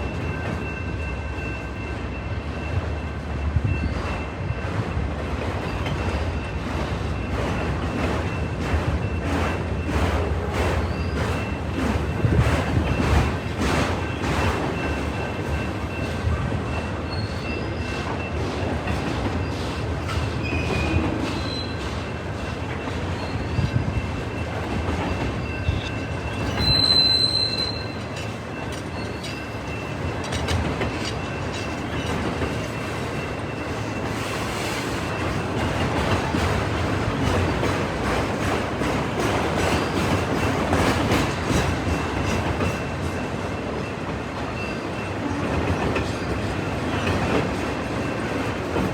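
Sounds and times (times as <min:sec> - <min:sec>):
train wheels clicking over rail joints: 0:00.0 - 0:48.9
wheel squeal: 0:10.8 - 0:11.6, 0:20.2 - 0:22.0, 0:25.1 - 0:30.0.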